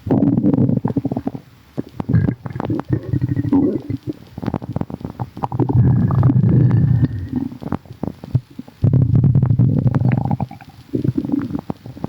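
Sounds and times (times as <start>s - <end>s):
stomach rumbling and gurgling: 0.0s - 12.0s.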